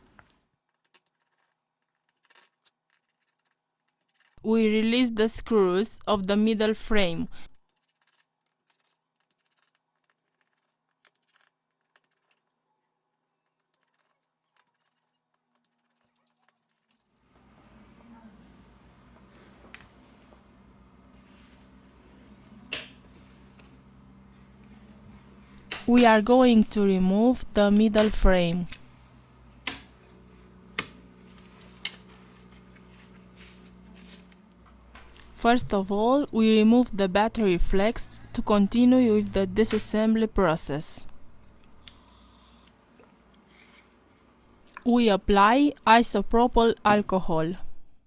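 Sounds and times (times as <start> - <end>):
low electrical hum: 4.3 - 7.6, 17.2 - 48.0.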